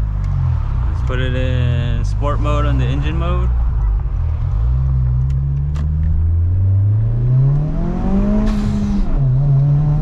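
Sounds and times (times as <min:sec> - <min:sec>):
car engine accelerating: 0:00.0 - 0:10.0.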